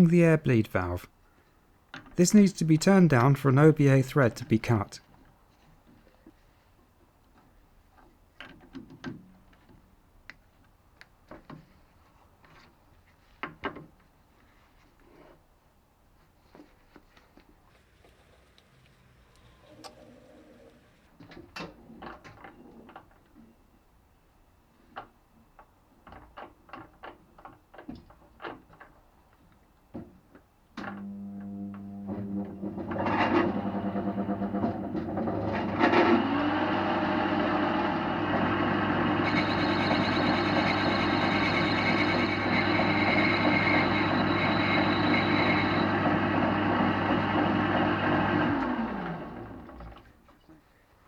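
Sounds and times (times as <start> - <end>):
lathe motor humming: 35.6 - 49.8.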